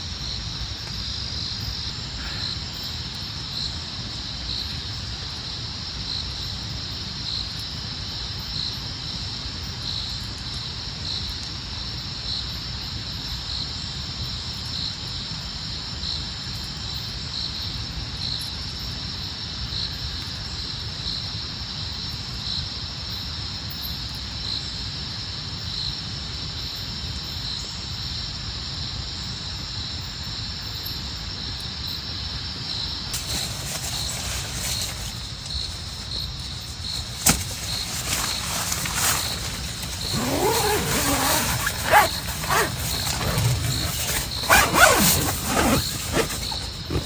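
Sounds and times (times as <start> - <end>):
insect chirping: 0.0 - 20.1, 30.5 - 47.0.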